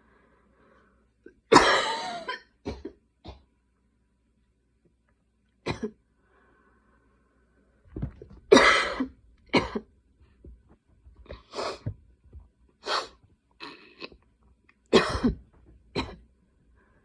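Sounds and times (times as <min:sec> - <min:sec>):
woman coughing: 0:01.5 - 0:03.4, 0:05.7 - 0:06.0, 0:08.5 - 0:09.9, 0:14.9 - 0:15.4
short breaths: 0:06.2 - 0:07.6.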